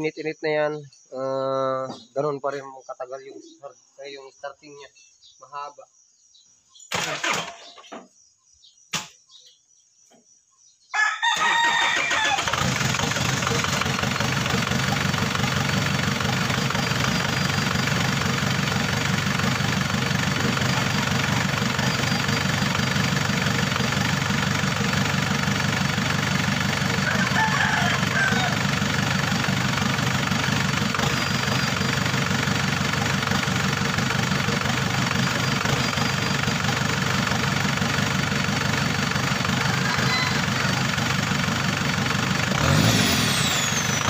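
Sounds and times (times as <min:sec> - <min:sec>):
diesel engine starting and running: 0:06.9 - 0:07.8, 0:11.4 - 0:44.0.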